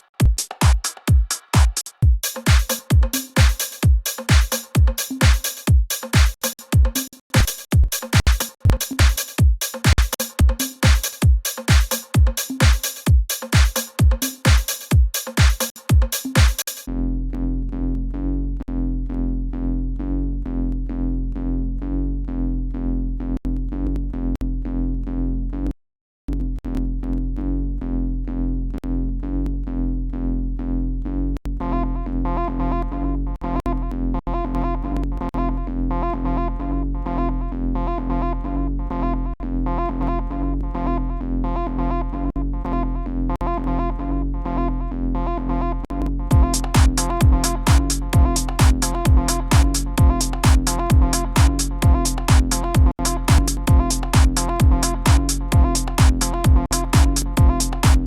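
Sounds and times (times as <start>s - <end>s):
pulsing synth pad and bass: 33.6s - 58.0s.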